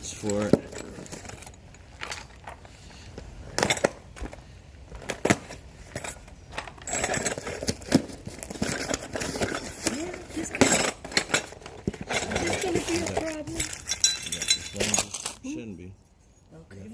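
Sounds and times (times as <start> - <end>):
metal hardware clinking: 0.0 - 2.6, 8.6 - 15.6.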